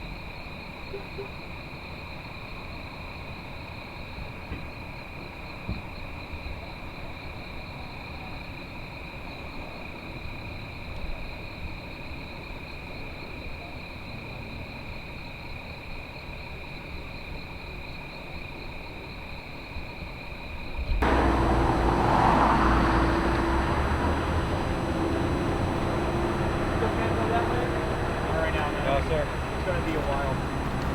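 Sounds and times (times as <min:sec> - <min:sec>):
crickets chirring: 0:14.8 - 0:30.9.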